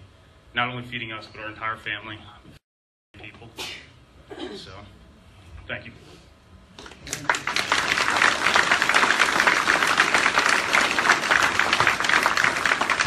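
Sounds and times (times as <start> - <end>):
congregation applauding: 6.8 - 13.0.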